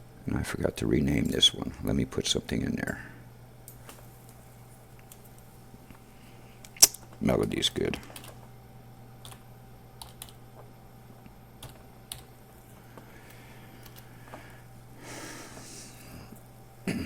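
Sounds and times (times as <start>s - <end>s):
low electrical hum: 0.0s - 17.0s
keyboard and mouse clicks: 6.6s - 7.2s, 10.0s - 10.7s, 11.6s - 13.1s, 13.8s - 14.4s.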